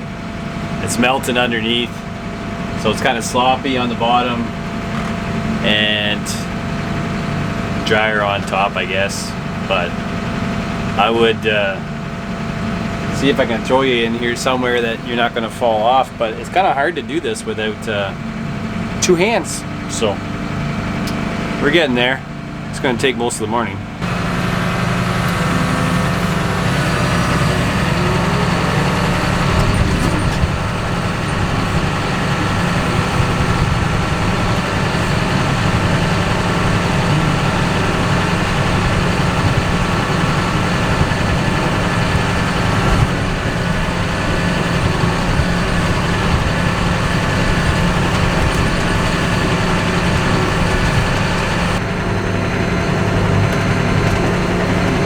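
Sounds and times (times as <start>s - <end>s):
heavy engine under load: 0.0s - 55.0s.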